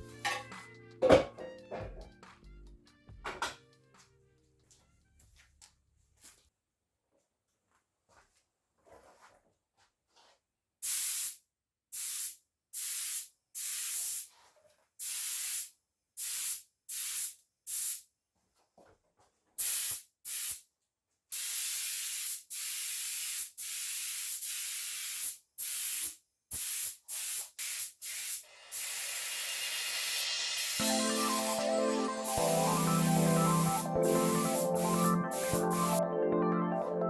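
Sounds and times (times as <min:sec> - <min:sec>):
spraying hiss bursts: 0:10.8 - 0:11.4, 0:15.0 - 0:18.0, 0:19.6 - 0:20.6, 0:21.3 - 0:36.0.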